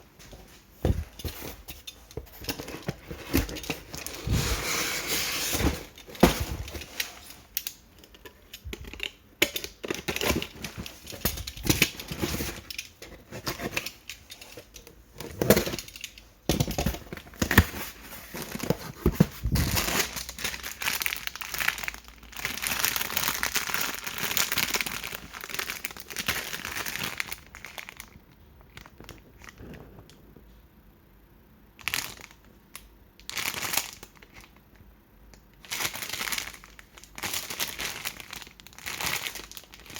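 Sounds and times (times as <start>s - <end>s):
plastic packaging crinkling: 16.7s - 29.8s, 33.2s - 34.6s, 35.6s - 39.9s.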